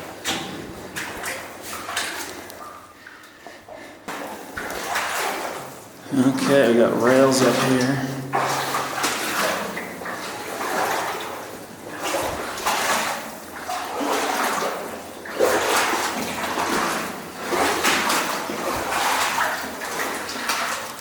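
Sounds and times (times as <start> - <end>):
wading through deep water: 0.0 - 21.0.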